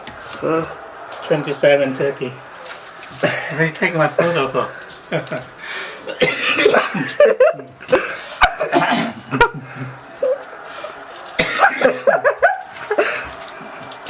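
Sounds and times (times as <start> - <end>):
person's voice: 0.4 - 2.4, 3.3 - 4.8
person coughing: 3.2 - 3.6, 6.1 - 9.9, 11.4 - 13.3.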